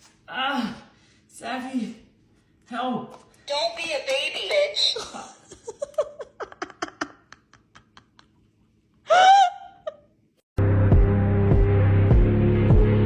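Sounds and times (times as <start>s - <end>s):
laughter in quick pulses: 5.2s - 8.5s
music with regular beat: 10.8s - 13.0s.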